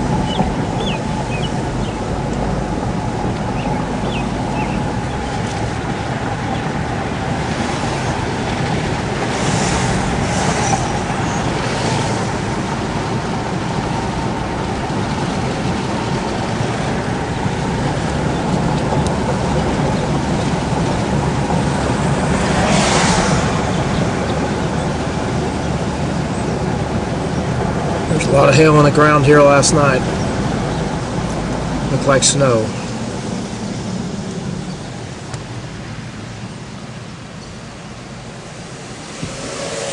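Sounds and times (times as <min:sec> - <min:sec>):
vehicle road and engine noise: 0:00.0 - 0:39.9
hissing: 0:38.2 - 0:39.9.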